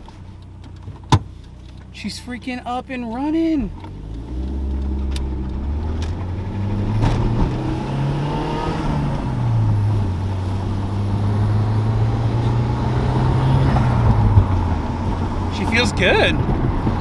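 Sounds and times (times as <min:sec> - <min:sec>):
car engine revving: 0:00.0 - 0:17.0
person talking: 0:02.0 - 0:03.8, 0:15.5 - 0:16.4.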